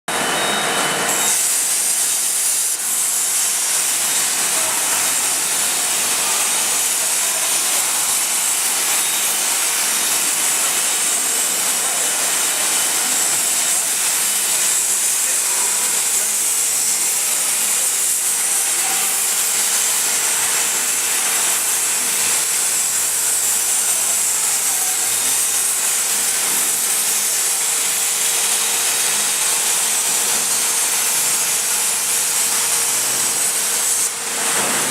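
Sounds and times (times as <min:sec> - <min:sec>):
plasma torch hiss: 0:01.1 - 0:34.9.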